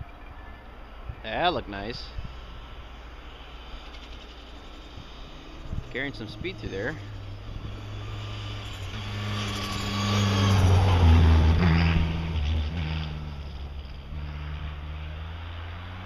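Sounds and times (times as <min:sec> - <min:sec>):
rally car passing at speed: 0:02.4 - 0:16.0.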